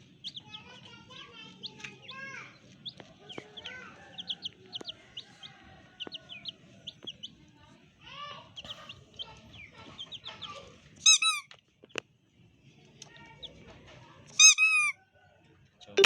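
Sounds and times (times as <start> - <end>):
chicks peeping: 0.0 - 7.6, 8.4 - 11.4
loud squawking call: 14.4 - 14.9.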